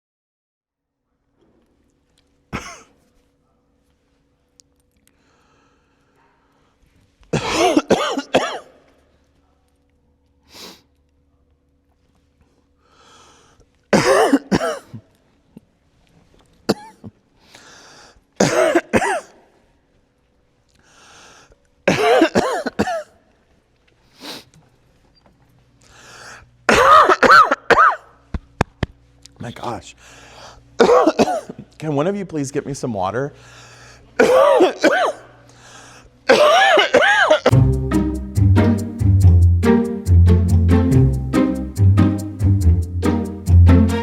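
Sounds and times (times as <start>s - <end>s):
throat clearing: 2.5s - 3.1s, 7.3s - 8.7s, 14.0s - 15.2s, 16.7s - 17.2s, 18.4s - 19.4s, 30.8s - 31.7s, 34.2s - 35.3s, 36.3s - 37.5s
person coughing: 2.6s - 3.0s, 7.3s - 8.8s, 13.9s - 15.1s, 16.7s - 17.2s, 18.4s - 19.4s, 21.9s - 23.2s, 26.7s - 28.1s, 30.8s - 31.7s, 34.2s - 35.3s, 36.3s - 37.5s
breaths: 5.1s - 7.1s, 12.4s - 13.7s, 17.4s - 18.3s, 20.7s - 21.6s, 25.8s - 26.5s, 29.9s - 30.8s, 33.3s - 34.2s, 35.4s - 36.2s.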